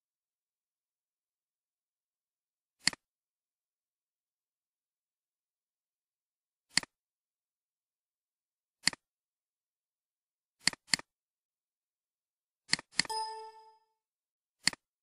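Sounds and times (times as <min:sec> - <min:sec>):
computer mouse clicks: 0:02.8 - 0:03.0, 0:06.7 - 0:07.0, 0:08.8 - 0:09.0, 0:10.6 - 0:11.1, 0:12.7 - 0:13.6, 0:14.6 - 0:14.9.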